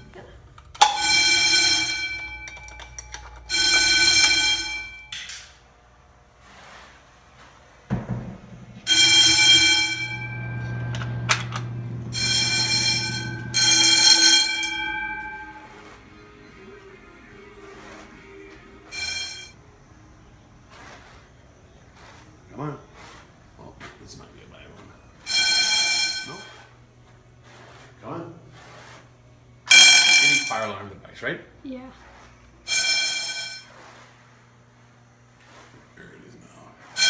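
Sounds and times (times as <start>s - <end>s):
fire alarm horn blasts: 0.8s - 5.3s, 8.6s - 23.2s, 24.4s - 26.8s, 29.6s - 30.9s, 32.6s - 34.0s.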